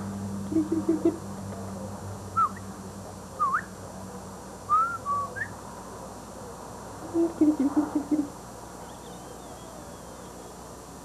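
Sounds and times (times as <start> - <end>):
low steady hum: 0.0 - 11.0
whistled chirps: 2.4 - 2.6, 3.4 - 3.7, 4.7 - 5.6, 8.8 - 10.6.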